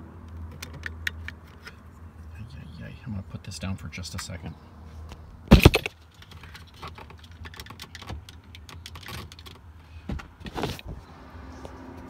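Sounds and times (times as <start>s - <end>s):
plastic parts clicking and rattling: 5.6s - 9.6s.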